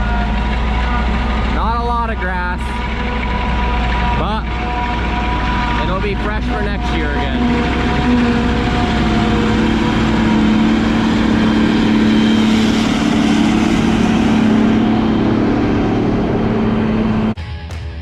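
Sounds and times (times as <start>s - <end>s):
road noise: 0.0s - 17.4s
truck engine drone: 0.0s - 17.7s.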